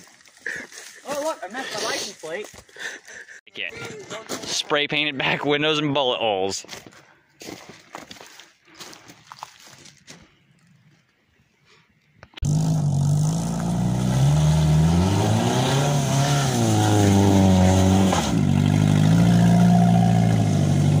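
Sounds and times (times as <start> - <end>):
car engine running and revving: 12.4 - 21.0.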